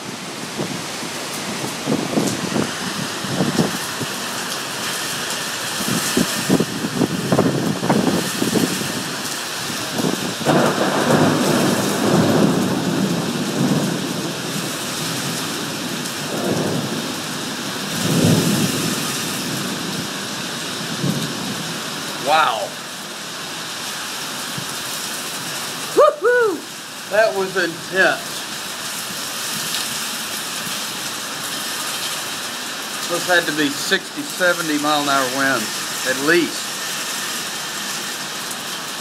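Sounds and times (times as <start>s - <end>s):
strong wind buffeting microphone: 0.0s - 22.2s
heavy rain: 0.0s - 39.0s.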